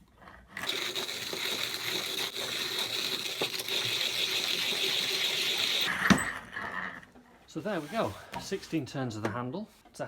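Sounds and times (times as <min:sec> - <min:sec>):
coffee grinder crunching beans: 0:00.0 - 0:06.0.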